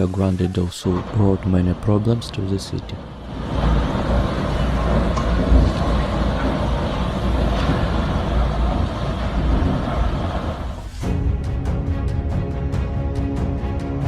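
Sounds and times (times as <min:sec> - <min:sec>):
storm wind rushing: 0:00.8 - 0:12.8
wind buffeting microphone: 0:01.0 - 0:11.0.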